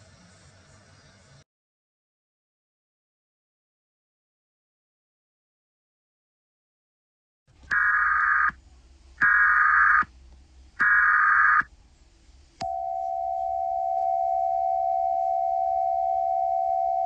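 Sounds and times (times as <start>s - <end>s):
digital data tone bursts: 7.7s - 8.6s, 9.2s - 10.1s, 10.8s - 11.7s
steady attention tone: 7.7s - 8.6s, 9.2s - 10.1s, 10.8s - 11.7s, 12.6s - 17.0s.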